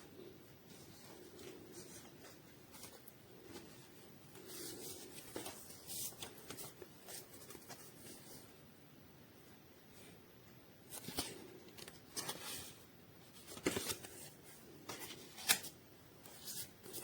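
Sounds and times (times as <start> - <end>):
faint rustling and rubbing: 0.1 - 8.7.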